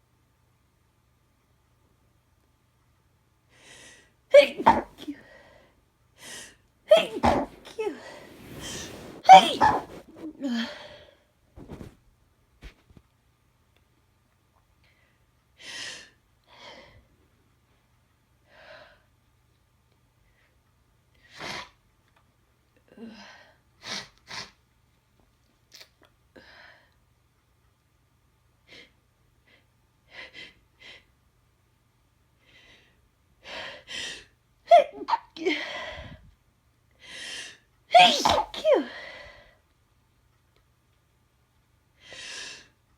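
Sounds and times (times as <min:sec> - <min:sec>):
person sniffing: 0:06.9 - 0:10.4.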